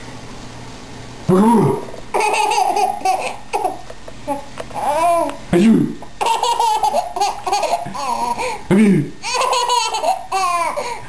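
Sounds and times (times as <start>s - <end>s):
low adult voice: 1.3s - 2.0s, 8.7s - 9.2s
baby laughing: 2.1s - 5.4s, 6.2s - 8.6s, 9.2s - 11.0s.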